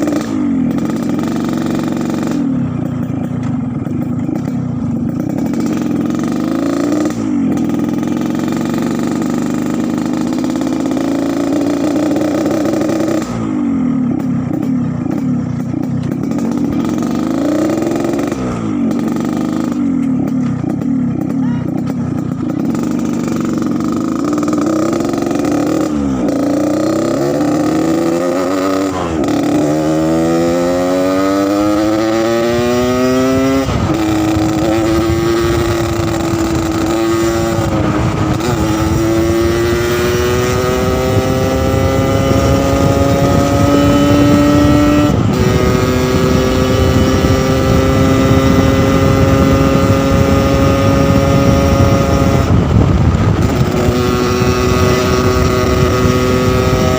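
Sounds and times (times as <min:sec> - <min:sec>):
two-stroke motorcycle engine: 0:00.0 - 0:56.9.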